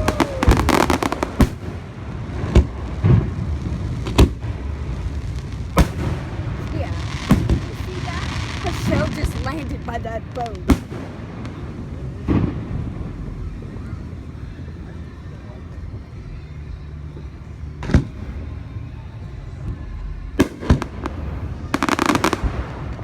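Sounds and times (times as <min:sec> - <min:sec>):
firework shells booming: 0:00.0 - 0:13.2
firework crackling: 0:00.0 - 0:16.1, 0:17.0 - 0:23.0.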